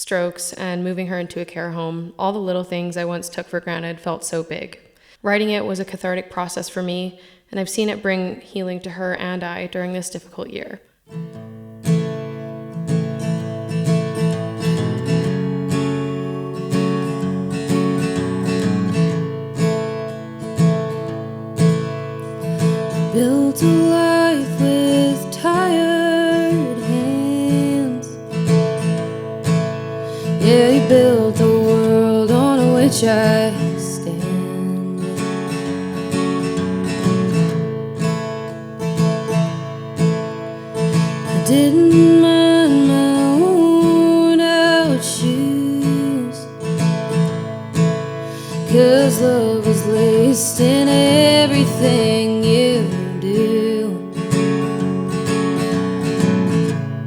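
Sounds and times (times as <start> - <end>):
acoustic guitar strumming chords: 11.1 - 57.0.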